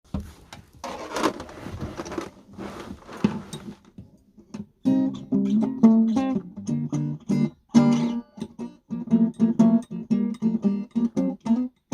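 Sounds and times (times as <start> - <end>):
acoustic guitar strumming: 4.8 - 11.9.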